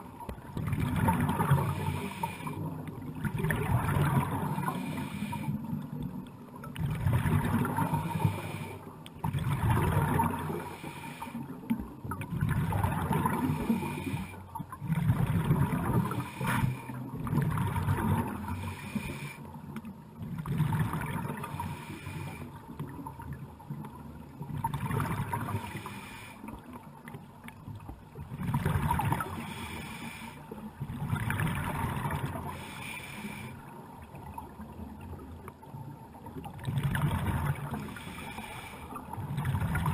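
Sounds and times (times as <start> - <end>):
bubbles gurgling underwater: 0.0 - 5.2, 6.2 - 8.6, 9.2 - 10.9, 11.8 - 18.6, 20.2 - 21.9, 22.8 - 25.8, 26.6 - 29.6, 30.7 - 32.7, 34.0 - 38.2, 39.1 - 39.9
diver breathing through regulator: 1.4 - 2.8, 4.5 - 5.8, 7.7 - 9.1, 10.2 - 11.7, 13.2 - 14.5, 16.0 - 17.2, 18.3 - 19.6, 21.4 - 22.6, 25.4 - 26.6, 29.2 - 30.6, 32.3 - 33.8, 37.7 - 39.1.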